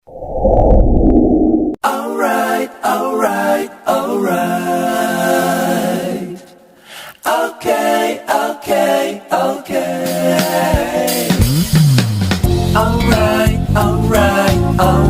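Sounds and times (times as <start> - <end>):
voices singing in harmony: 1.8 - 11.7, 12.5 - 15.0.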